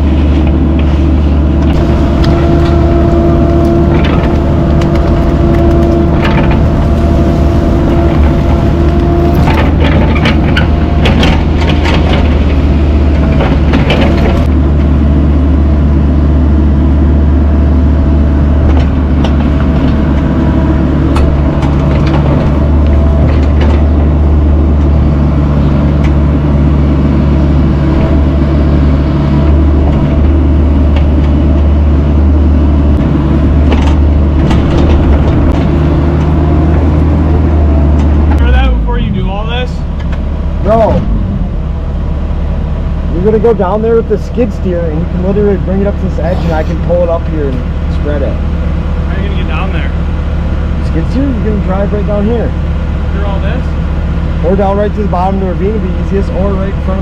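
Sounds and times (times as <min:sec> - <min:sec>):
diesel engine running: 0:00.0 - 0:57.0
boulders knocking and cracking: 0:03.7 - 0:14.5.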